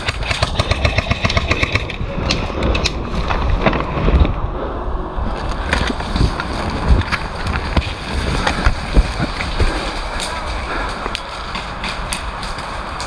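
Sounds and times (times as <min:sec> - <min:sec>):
airsoft guns firing: 0:00.0 - 0:02.0
wind rumble on microphone: 0:00.0 - 0:13.0.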